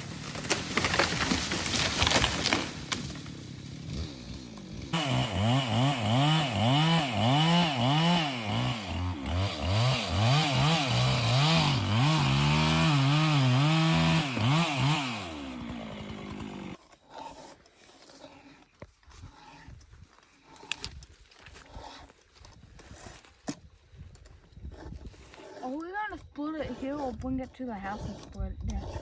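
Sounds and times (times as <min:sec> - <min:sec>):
chainsaw cutting wood: 0:00.0 - 0:18.2.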